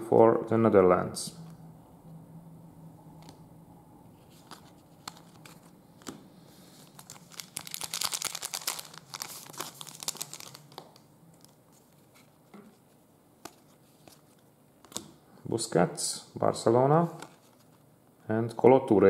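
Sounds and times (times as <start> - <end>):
plastic wrapper crinkling and tearing: 6.8 - 12.3.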